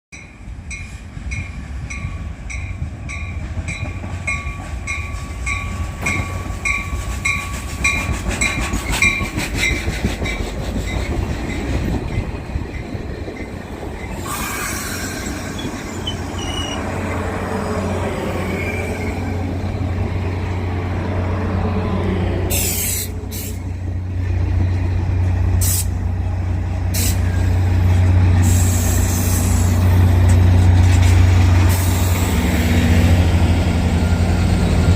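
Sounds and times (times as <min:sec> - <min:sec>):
train bell ringing: 0:00.1 - 0:14.2
train wheel and brake noise: 0:00.2 - 0:17.5, 0:22.4 - 0:34.9.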